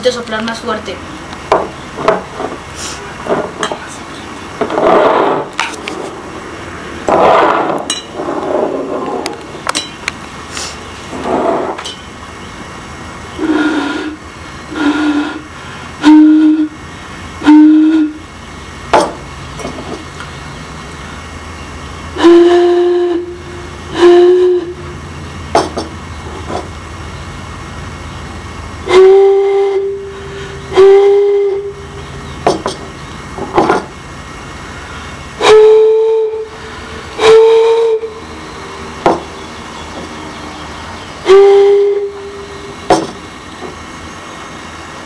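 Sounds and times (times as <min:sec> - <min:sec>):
breathy rushing air: 0:02.6 - 0:04.0, 0:04.7 - 0:09.6, 0:10.3 - 0:11.8, 0:13.4 - 0:17.3, 0:29.7 - 0:32.0, 0:36.3 - 0:42.7
hollow whistle notes from bottles: 0:13.4 - 0:16.8, 0:17.4 - 0:18.3, 0:22.2 - 0:25.0, 0:28.9 - 0:32.2, 0:35.4 - 0:39.5, 0:41.2 - 0:43.0.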